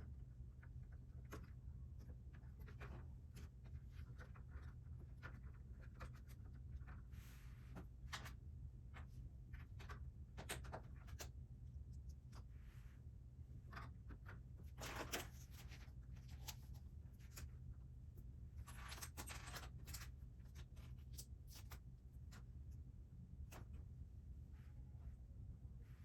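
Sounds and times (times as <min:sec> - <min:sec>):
faint low hum: 0:00.0 - 0:26.0.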